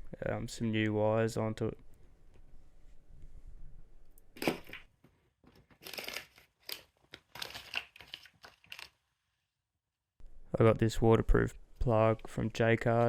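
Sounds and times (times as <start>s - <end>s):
crinkling tearing rustles: 5.6s - 9.0s.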